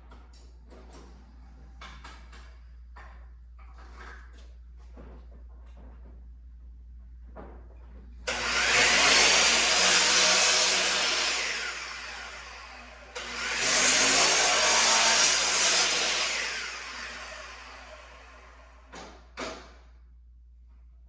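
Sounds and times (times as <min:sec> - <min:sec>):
miter saw cutting wood: 0:08.3 - 0:18.9.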